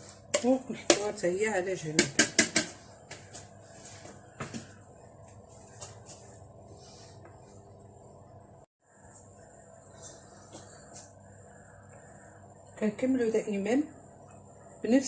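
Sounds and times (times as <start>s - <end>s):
faint room hum: 0.0s - 15.0s.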